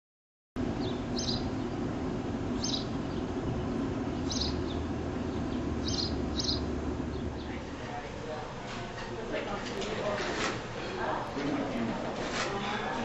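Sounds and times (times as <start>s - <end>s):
low hum: 0.6s - 8.6s
bird chirping: 0.7s - 1.9s, 2.5s - 7.6s.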